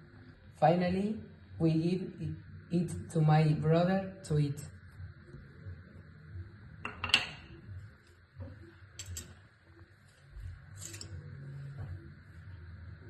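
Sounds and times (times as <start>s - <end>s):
faint steady hum: 0.0s - 13.0s
cutlery clinking on plate: 9.0s - 9.4s, 10.8s - 11.2s.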